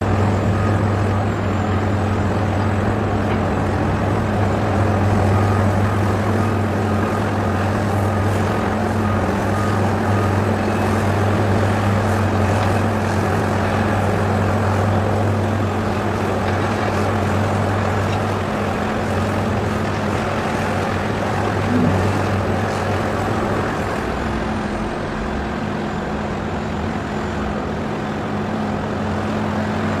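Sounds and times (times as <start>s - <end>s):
machine humming: 21.2s - 23.6s.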